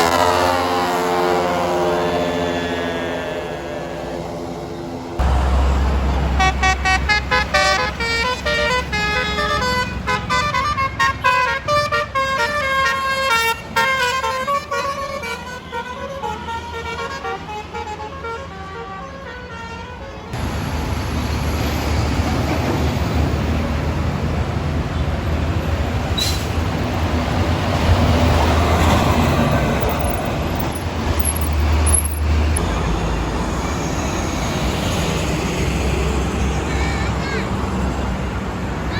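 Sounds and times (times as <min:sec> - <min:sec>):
musical air horn melody: 0:00.0 - 0:04.2, 0:06.3 - 0:20.3
road traffic noise: 0:00.0 - 0:38.9
low engine rumble: 0:01.1 - 0:10.6.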